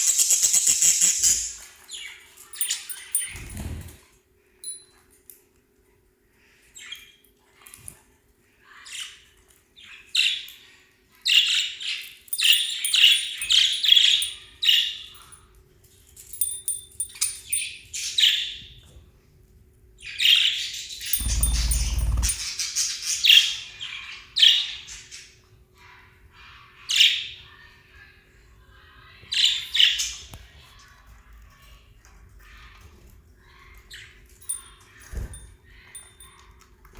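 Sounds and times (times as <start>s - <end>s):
parrots chirping and squawking: 0.0s - 4.0s, 12.4s - 15.4s, 20.2s - 25.2s, 34.4s - 36.3s.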